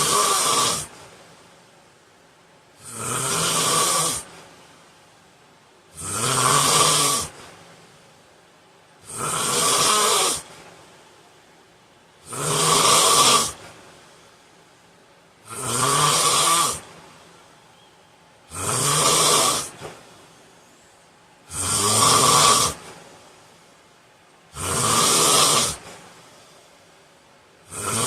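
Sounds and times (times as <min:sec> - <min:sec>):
man snoring loudly: 0:00.0 - 0:01.0, 0:02.8 - 0:04.3, 0:05.9 - 0:07.4, 0:09.0 - 0:10.5, 0:12.2 - 0:13.6, 0:15.4 - 0:16.9, 0:18.5 - 0:19.8, 0:21.5 - 0:22.8, 0:24.5 - 0:25.8, 0:27.6 - 0:28.0.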